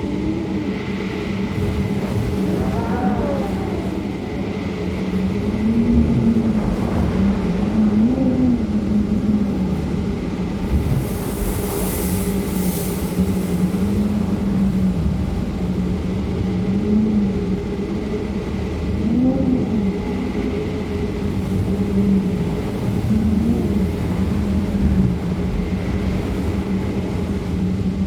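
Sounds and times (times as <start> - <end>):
wind gusts on microphone: 0.0 - 28.0
wind howling: 0.0 - 28.0.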